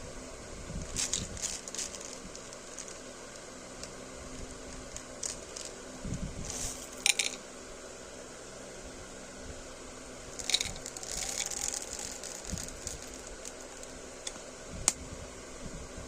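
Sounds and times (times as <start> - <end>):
steady low hum: 0.0 - 16.0
plastic packaging crinkling: 0.9 - 3.4, 4.7 - 5.8, 10.4 - 13.9.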